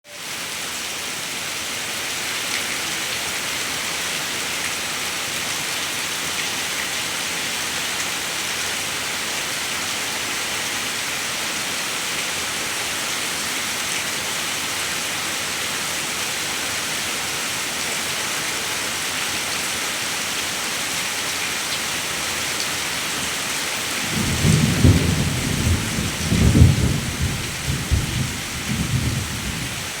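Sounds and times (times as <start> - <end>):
steady rain: 0.1 - 30.0
rolling thunder: 24.0 - 30.0.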